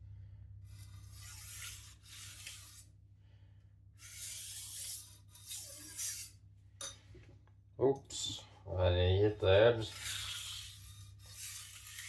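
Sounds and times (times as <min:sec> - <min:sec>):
knife scraping on whetstone: 0:00.7 - 0:02.9, 0:04.0 - 0:06.4, 0:09.8 - 0:12.0.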